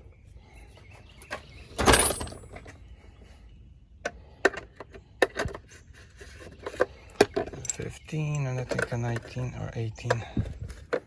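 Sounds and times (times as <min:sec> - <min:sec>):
metal tools clattering: 0:01.8 - 0:02.7, 0:06.7 - 0:10.2.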